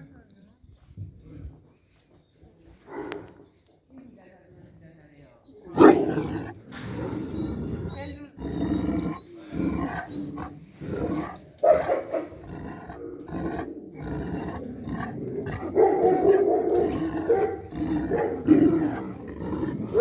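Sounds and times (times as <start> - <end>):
dogs growling and barking: 5.8 - 20.0.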